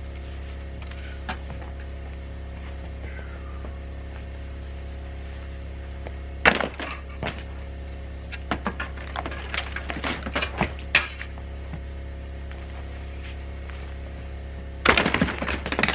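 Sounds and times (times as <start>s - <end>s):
ice cracking on metal roof: 8.4s - 11.2s, 14.8s - 15.9s
ice chunks clattering: 14.8s - 15.9s.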